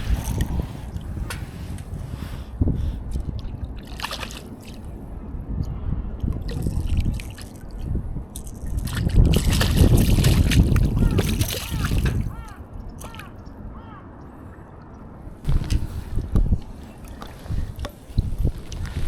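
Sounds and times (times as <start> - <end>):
wind rumbling on microphone: 0.0 - 19.0
lake water sloshing: 3.8 - 4.9, 6.5 - 12.4.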